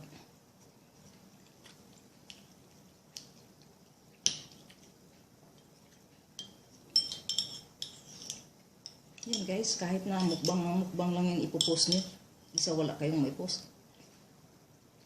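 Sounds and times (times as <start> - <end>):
cutlery clinking on a dish: 6.4 - 8.4.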